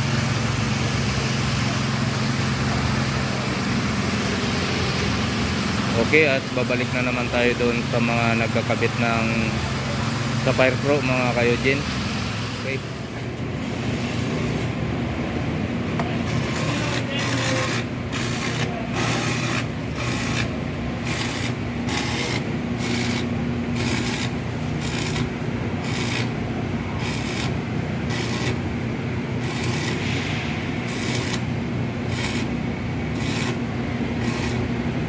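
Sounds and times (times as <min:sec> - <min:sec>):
low machine hum: 0:00.0 - 0:35.0
hand tool rasping strokes: 0:16.3 - 0:26.3, 0:27.0 - 0:28.6, 0:29.4 - 0:30.1, 0:30.9 - 0:31.5, 0:32.1 - 0:32.5, 0:33.2 - 0:33.6, 0:34.2 - 0:34.7.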